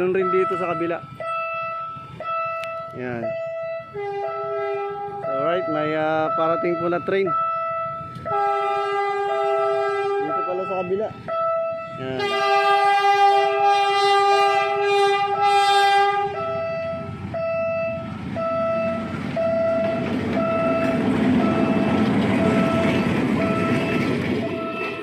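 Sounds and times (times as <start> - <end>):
train rumbling on tracks: 0.0 - 25.0
train horn blast: 0.2 - 5.7, 8.2 - 17.1.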